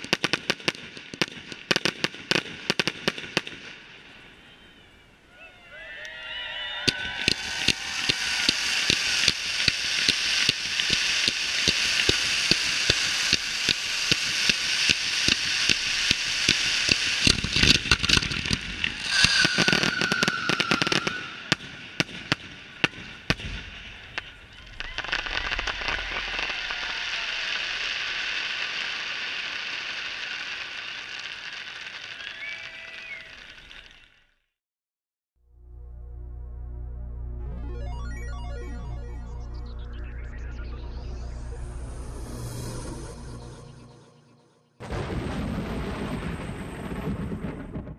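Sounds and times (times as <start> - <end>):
fireworks crackling and banging: 0.0 - 4.3, 6.7 - 34.4, 44.8 - 47.9
even hiss: 6.0 - 22.0
falling firework whistle: 6.0 - 34.2.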